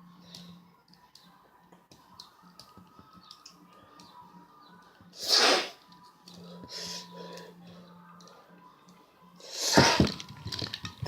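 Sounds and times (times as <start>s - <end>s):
person sniffing: 5.2s - 5.8s.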